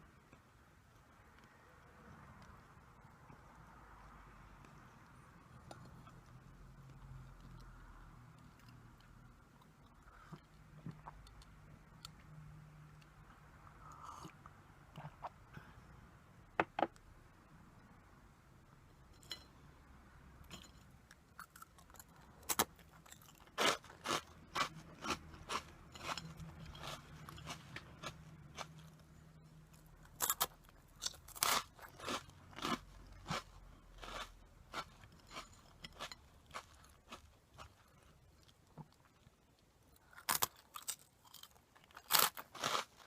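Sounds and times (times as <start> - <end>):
crunching corn puff snacks: 21.4 - 29.0, 29.7 - 39.3, 40.0 - 43.0.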